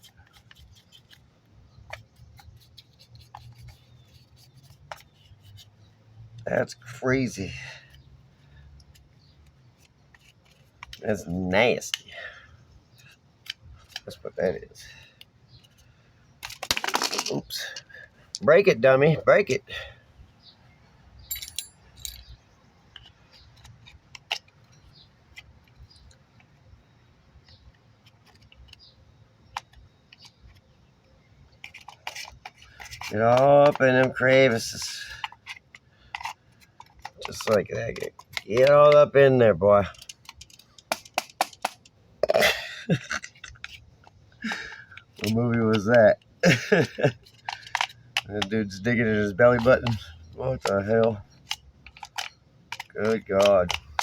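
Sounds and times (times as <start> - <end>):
metallic clinks of tools handled: 21.2 - 22.4.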